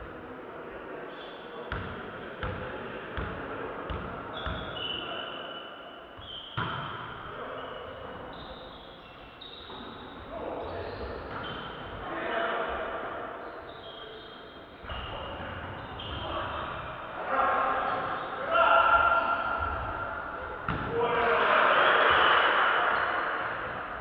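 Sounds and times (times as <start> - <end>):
voices in a hall: 0.0 - 24.0
volleyball bouncing on gym floor: 20.7 - 21.0.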